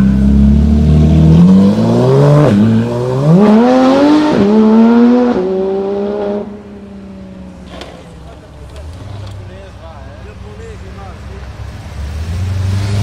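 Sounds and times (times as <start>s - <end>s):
car engine accelerating hard: 0.0s - 6.6s, 11.3s - 13.0s.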